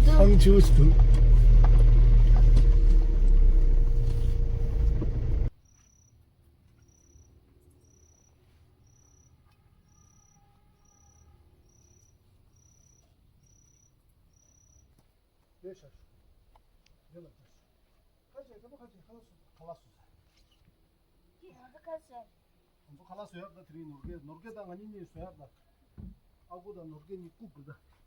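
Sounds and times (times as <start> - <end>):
vehicle driving rumble: 0.0 - 5.5
cricket chirping: 0.9 - 15.2.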